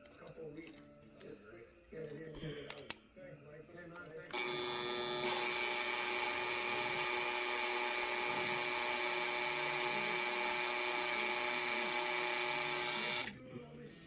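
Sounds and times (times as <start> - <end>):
electric drill whining into metal: 4.3 - 13.4.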